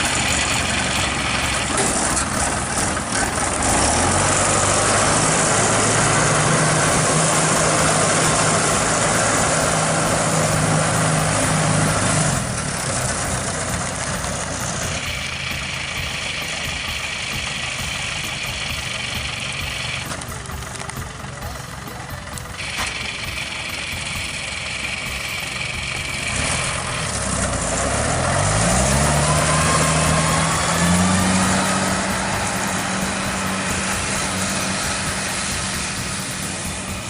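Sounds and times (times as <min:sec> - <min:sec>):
farm machine engine humming: 0:00.0 - 0:37.0
high-pitched whine: 0:21.9 - 0:37.0.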